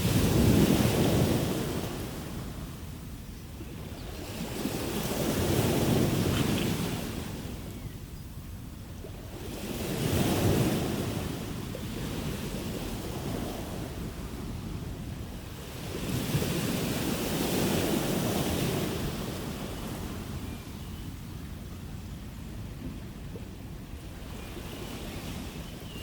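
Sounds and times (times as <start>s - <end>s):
ocean waves breaking on shore: 0.0s - 7.8s, 9.0s - 20.8s.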